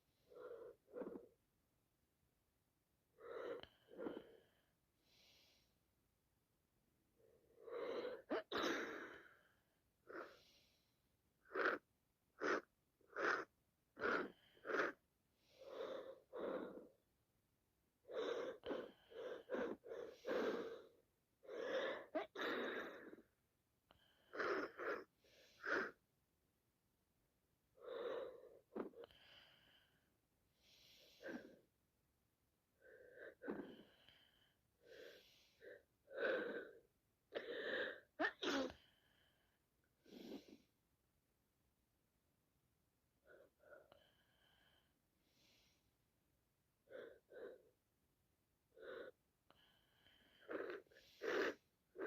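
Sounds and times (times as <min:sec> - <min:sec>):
woman sniffing: 0:12.4 - 0:17.0, 0:18.1 - 0:23.2, 0:24.3 - 0:26.0, 0:40.0 - 0:40.7, 0:50.1 - 0:52.0.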